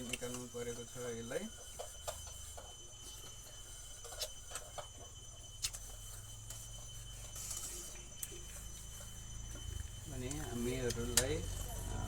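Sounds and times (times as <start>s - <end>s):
faint steady hum: 0.0s - 12.0s
small parts clicking and tapping: 9.6s - 11.8s.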